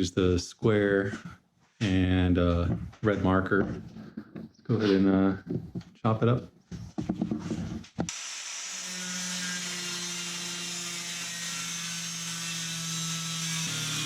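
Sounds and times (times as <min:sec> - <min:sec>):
power tool cutting aluminum: 0:08.1 - 0:14.0.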